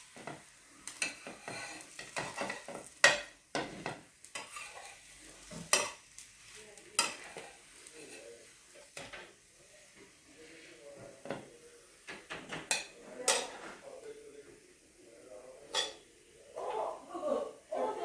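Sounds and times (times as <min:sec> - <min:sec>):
utensil scraping a pan: 0:00.0 - 0:09.3
light sizzle: 0:00.0 - 0:18.0.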